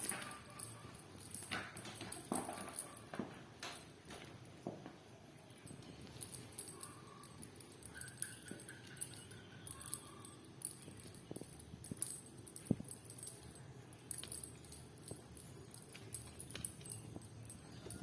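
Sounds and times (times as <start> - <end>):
bell toy jingling: 0.0 - 3.2, 5.5 - 18.0.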